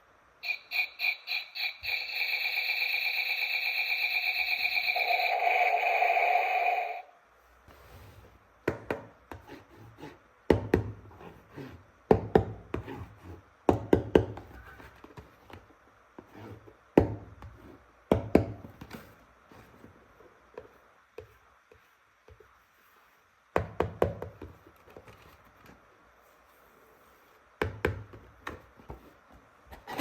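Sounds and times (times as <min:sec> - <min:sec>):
brief electronic tone: 0:00.4 - 0:07.2.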